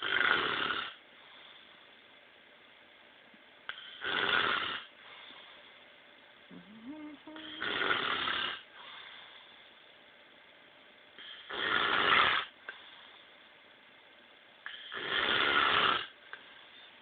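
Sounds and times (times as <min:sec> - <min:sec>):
man snoring: 0:00.0 - 0:01.0, 0:04.0 - 0:04.9, 0:06.5 - 0:08.6, 0:11.5 - 0:12.5, 0:14.9 - 0:16.1.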